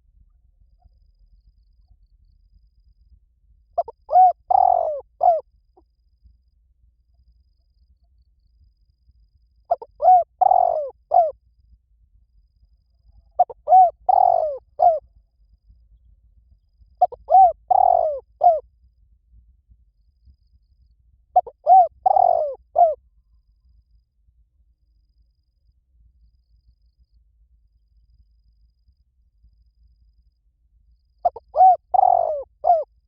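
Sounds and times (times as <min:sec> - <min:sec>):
dove cooing: 0:03.8 - 0:05.4, 0:09.7 - 0:11.3, 0:13.4 - 0:15.0, 0:17.0 - 0:18.6, 0:21.4 - 0:23.0, 0:31.2 - 0:32.9.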